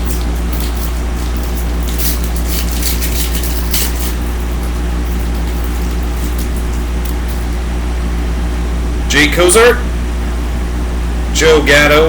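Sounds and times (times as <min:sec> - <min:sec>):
wrappers and cards crinkling: 0:00.0 - 0:07.6
low electrical hum: 0:00.0 - 0:12.0.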